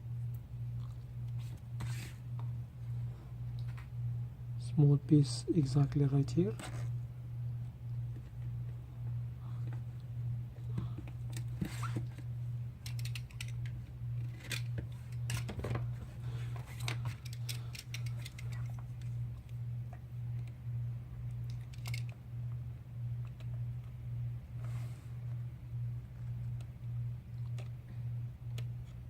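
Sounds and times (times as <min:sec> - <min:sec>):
steady low hum: 0:00.0 - 0:29.0
adhesive tape clicks and crinkles: 0:12.8 - 0:15.6, 0:21.4 - 0:22.2.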